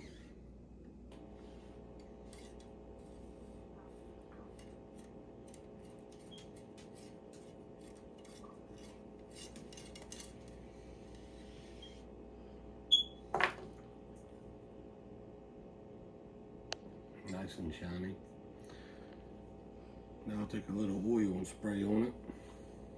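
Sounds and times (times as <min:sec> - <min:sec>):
scraping strokes on metal: 0:01.4 - 0:03.4, 0:04.5 - 0:10.5.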